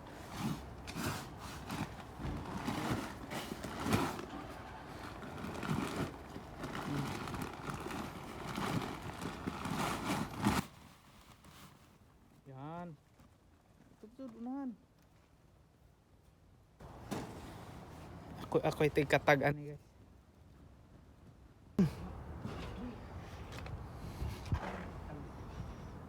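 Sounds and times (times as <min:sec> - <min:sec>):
construction knocks and scrapes: 0:00.0 - 0:11.6, 0:16.8 - 0:18.4.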